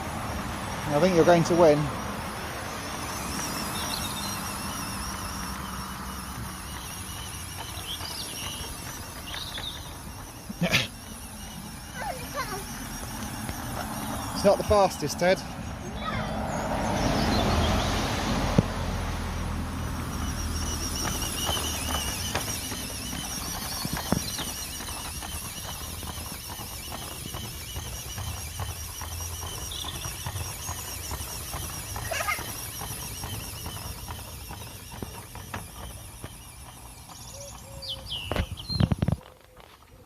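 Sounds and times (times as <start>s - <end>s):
model train motor whine: 0.0s - 39.2s.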